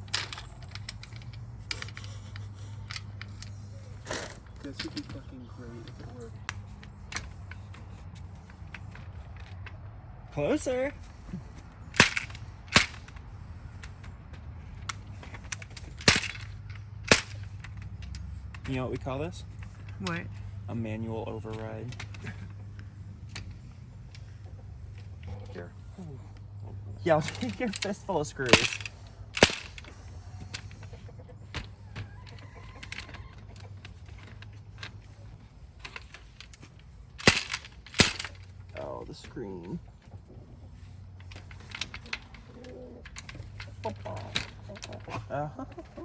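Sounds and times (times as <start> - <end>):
screws and hardware clicking: 0.0 - 9.8, 11.6 - 20.4, 27.1 - 39.5
chickens clucking: 30.0 - 34.0.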